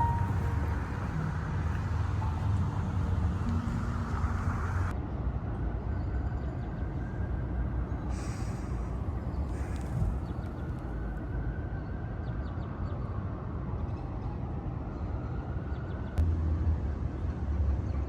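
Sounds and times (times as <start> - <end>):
city traffic rumble: 0.0 - 18.0.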